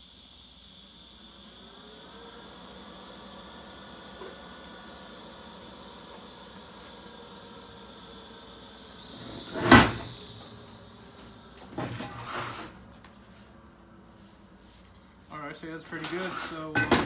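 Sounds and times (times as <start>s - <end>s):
welder electric buzz: 0.0s - 12.3s
metal clunk: 16.8s - 17.0s.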